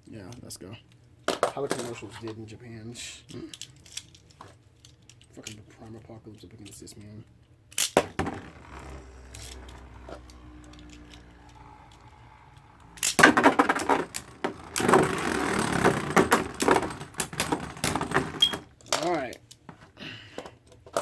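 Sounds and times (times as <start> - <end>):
spinning tops launched: 7.8 - 18.6
spinning tops clashing and scraping: 7.8 - 19.0.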